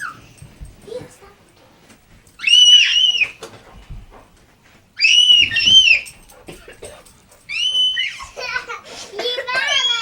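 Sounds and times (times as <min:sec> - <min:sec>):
child screaming: 0:02.4 - 0:03.4, 0:05.0 - 0:06.1, 0:07.5 - 0:08.5, 0:09.5 - 0:10.0.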